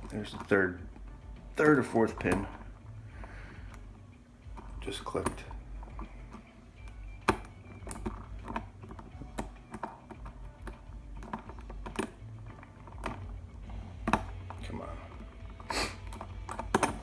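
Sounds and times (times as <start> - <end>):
lock picks clicking in padlock: 4.5 - 17.0.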